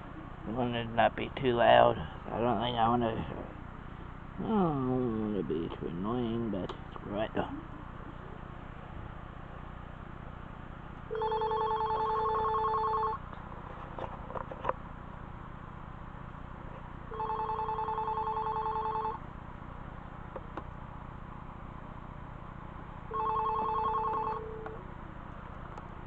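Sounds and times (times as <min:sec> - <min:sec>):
phone electronic ringer warbling: 0:11.1 - 0:13.2, 0:17.1 - 0:19.2, 0:23.1 - 0:24.8.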